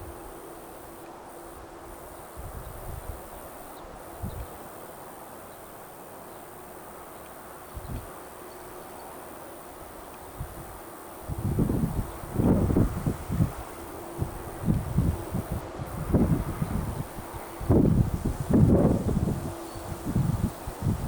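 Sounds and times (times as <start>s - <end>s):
distant combine harvester hum: 0.0s - 21.0s
wind buffeting microphone: 2.0s - 4.6s, 7.7s - 8.2s, 10.2s - 21.0s.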